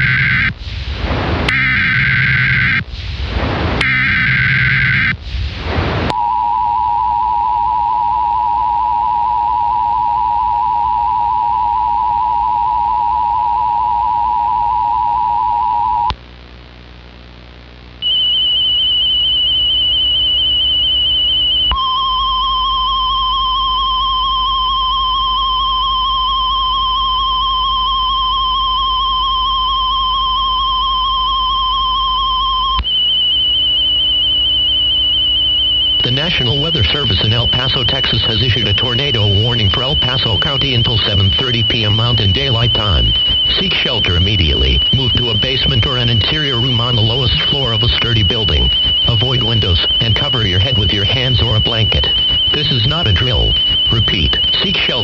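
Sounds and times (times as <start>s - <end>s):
high alert tone: 0.0s - 0.5s, 1.5s - 2.8s, 3.8s - 5.1s, 32.5s - 55.0s
low steady hum: 0.0s - 55.0s.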